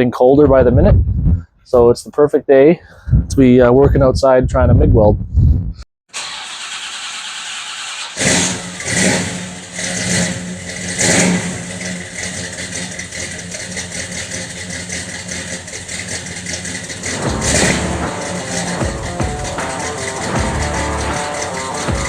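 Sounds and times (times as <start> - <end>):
engine starting and running: 6.1 - 22.0.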